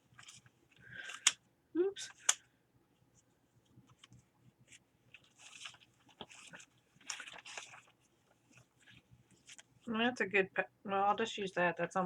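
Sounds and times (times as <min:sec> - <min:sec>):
paper crinkling and rustling: 0:00.0 - 0:01.4, 0:03.2 - 0:09.9.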